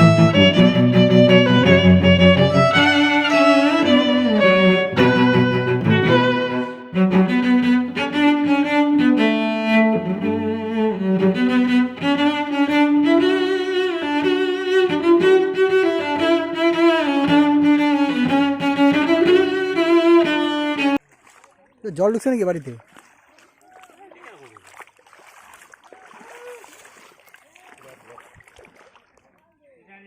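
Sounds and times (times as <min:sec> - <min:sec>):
mournful bowed strings melody: 0:00.0 - 0:21.0.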